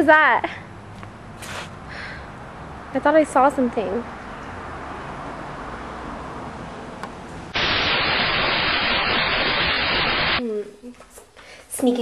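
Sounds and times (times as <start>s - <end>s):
loud white-noise static: 7.6s - 10.4s.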